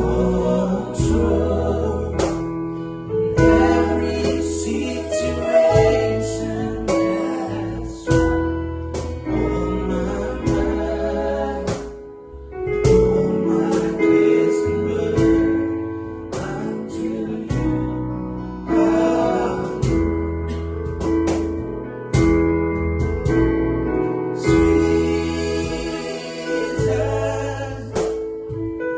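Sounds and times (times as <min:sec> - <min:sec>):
bass: 0:00.0 - 0:28.9
keyboard chords: 0:00.0 - 0:28.9
cajon strikes: 0:19.8 - 0:23.5, 0:27.9 - 0:28.6.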